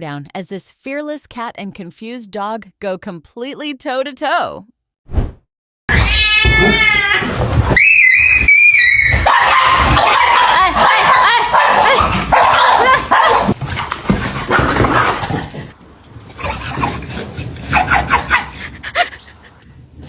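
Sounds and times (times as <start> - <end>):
dog yelping and whimpering: 16.4 - 19.1.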